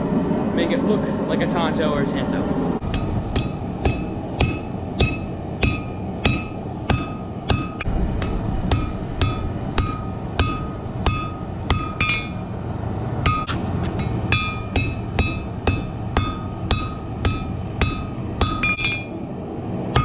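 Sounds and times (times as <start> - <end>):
steady low rumble: 0.0 - 20.0
hammer striking steel on anvil: 2.8 - 12.4, 13.2 - 19.2.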